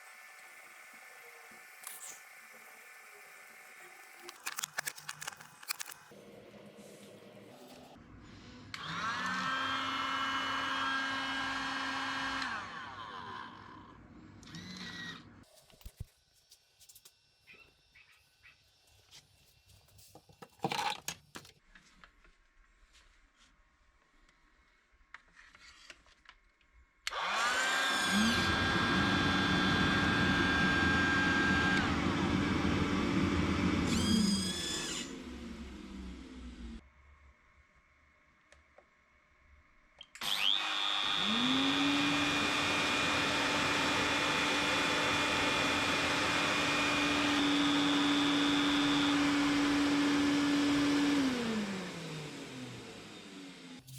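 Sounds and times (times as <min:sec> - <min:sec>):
shop vacuum motor whine: 0:08.6 - 0:15.3, 0:27.1 - 0:36.8, 0:40.1 - 0:53.9.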